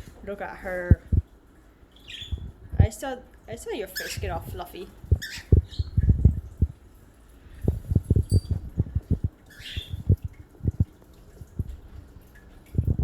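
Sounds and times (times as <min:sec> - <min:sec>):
soft low thumps and knocks: 0:00.9 - 0:01.3, 0:05.0 - 0:06.8, 0:07.6 - 0:11.9, 0:12.7 - 0:13.0.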